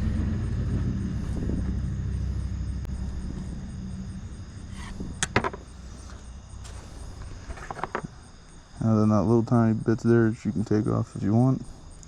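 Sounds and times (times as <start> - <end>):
passing vehicle engine rumble: 0.0 - 7.2.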